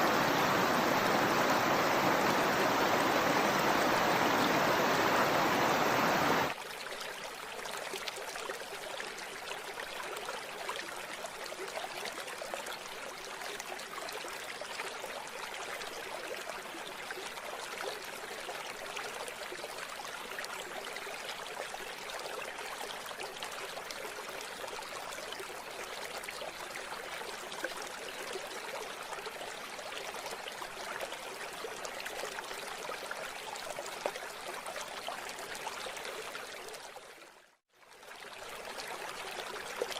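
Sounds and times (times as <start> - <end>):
loud rush of water: 0.0 - 6.6
river water flowing: 0.0 - 11.7.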